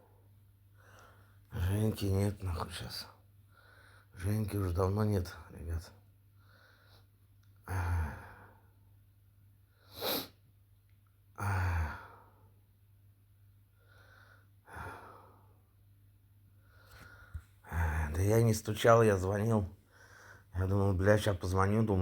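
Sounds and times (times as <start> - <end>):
man breathing: 0.7 - 1.5, 3.4 - 4.2, 6.4 - 8.8, 13.7 - 15.7, 16.6 - 18.2, 19.8 - 20.6.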